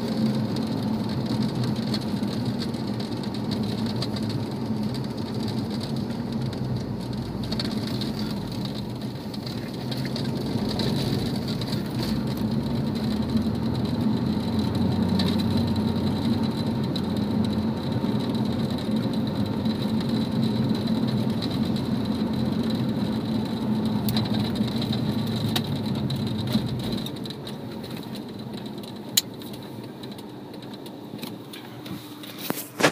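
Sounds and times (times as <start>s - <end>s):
car engine droning: 0.0s - 32.9s.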